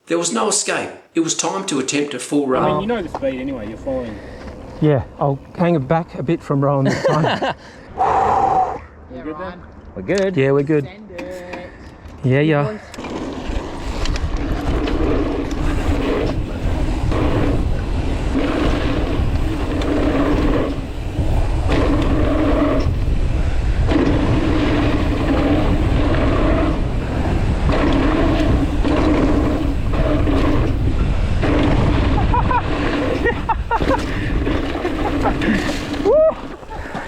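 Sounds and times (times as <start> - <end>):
bike tyres on dirt: 11.7 - 37.0
wind rushing on microphone: 13.0 - 37.0.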